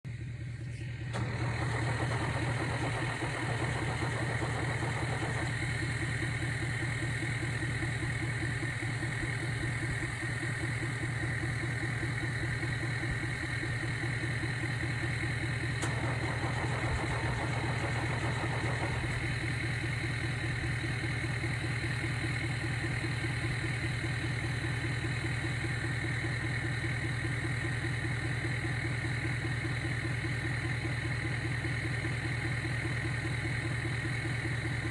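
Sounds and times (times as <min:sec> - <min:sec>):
motor vehicle drone: 0:00.4 - 0:27.5.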